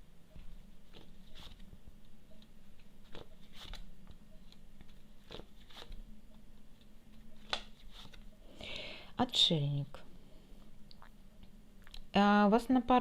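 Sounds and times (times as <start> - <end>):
faint low hum: 0.0 - 13.0
cards clicking and snapping: 7.4 - 8.2.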